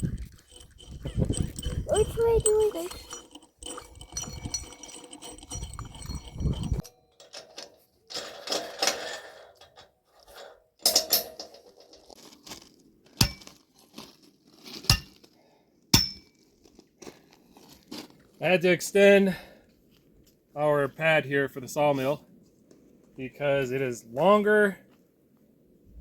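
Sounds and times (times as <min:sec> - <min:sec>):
metal hardware clinking: 0:00.0 - 0:12.2, 0:16.0 - 0:16.3.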